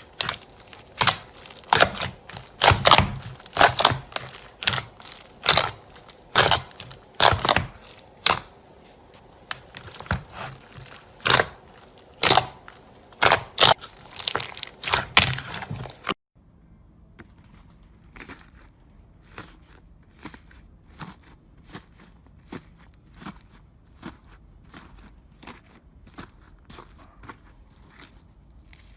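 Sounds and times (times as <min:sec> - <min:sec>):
crunchy material crunching by hand: 0:00.0 - 0:16.2, 0:17.2 - 0:28.9.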